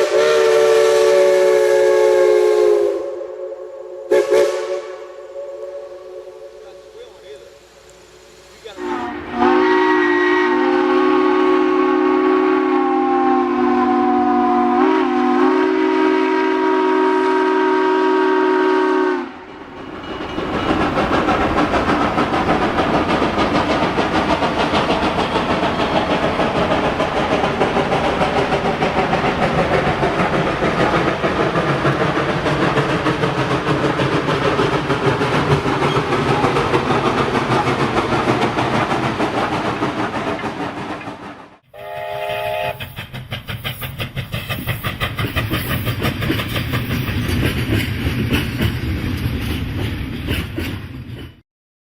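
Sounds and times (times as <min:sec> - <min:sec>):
steam locomotive whistle: 0:00.0 - 0:07.2, 0:08.6 - 0:19.5, 0:41.6 - 0:43.0
train rolling: 0:04.1 - 0:51.4.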